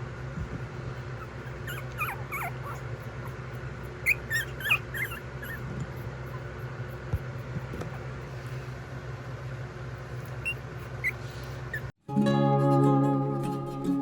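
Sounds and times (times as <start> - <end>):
steady low hum: 0.0 - 14.0
puppies squeaking and whining: 1.0 - 7.2, 10.1 - 11.9.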